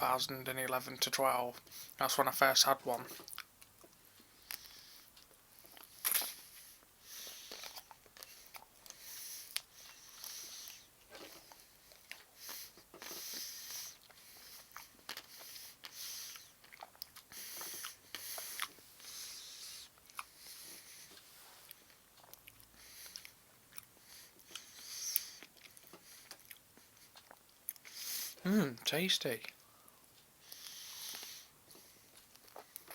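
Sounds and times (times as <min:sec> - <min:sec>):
person biting and chewing: 0:05.7 - 0:06.4, 0:14.0 - 0:18.8.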